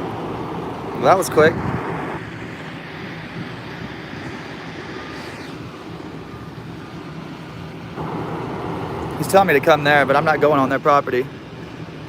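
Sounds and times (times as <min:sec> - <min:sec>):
wind on microphone: 0:00.0 - 0:06.7
road traffic: 0:00.0 - 0:12.0.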